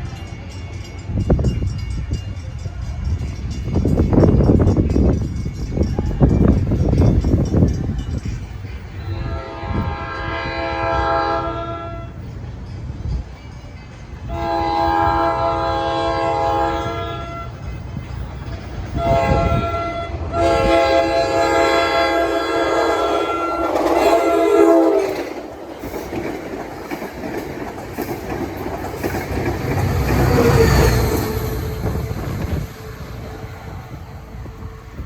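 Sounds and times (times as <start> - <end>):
train horn blasts: 8.9 - 12.3, 14.3 - 17.8, 18.9 - 25.4, 29.7 - 35.0
train wheels clattering: 20.4 - 34.1.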